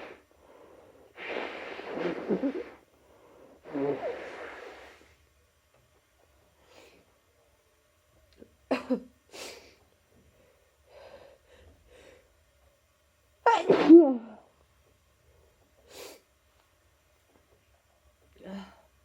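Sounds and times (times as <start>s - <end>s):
faint sniffs: 0.0s - 5.2s, 15.8s - 16.3s
person sneezing: 13.5s - 14.4s.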